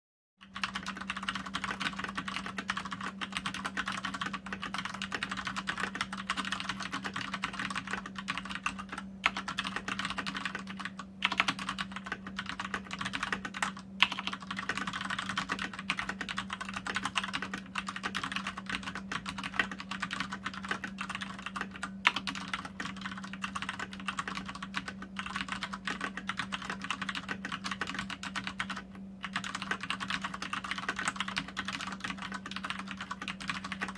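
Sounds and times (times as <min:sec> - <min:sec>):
mechanical keyboard typing: 0:00.4 - 0:33.9
steady low hum: 0:00.4 - 0:33.9.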